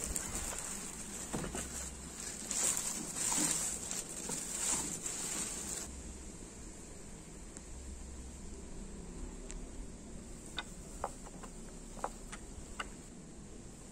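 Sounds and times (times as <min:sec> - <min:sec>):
crackles: 0:00.0 - 0:06.0
vacuum cleaner hissing: 0:00.0 - 0:06.9.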